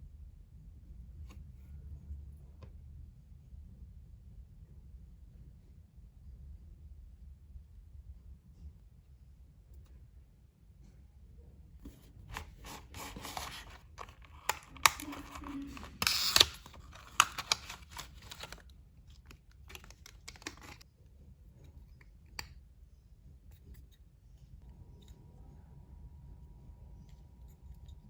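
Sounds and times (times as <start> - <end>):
packaging snips and rustles: 12.2 - 20.8
packaging tearing rip: 12.7 - 18.6.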